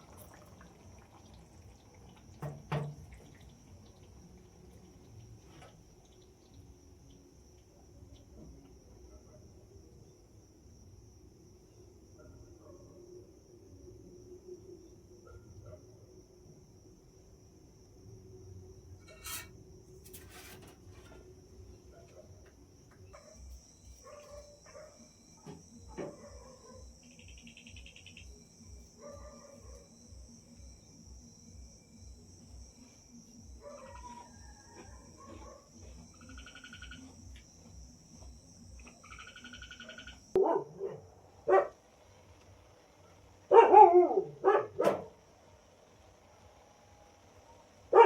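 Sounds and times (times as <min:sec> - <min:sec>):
cricket drone: 0:00.0 - 0:48.0
dog barking: 0:09.0 - 0:09.5, 0:12.2 - 0:13.1, 0:15.2 - 0:15.9, 0:21.9 - 0:22.3, 0:23.1 - 0:26.9, 0:29.0 - 0:29.9, 0:33.6 - 0:36.0, 0:40.4 - 0:41.8, 0:43.5 - 0:45.2, 0:47.5 - 0:48.0
bird chirps: 0:27.0 - 0:28.4, 0:39.0 - 0:40.2.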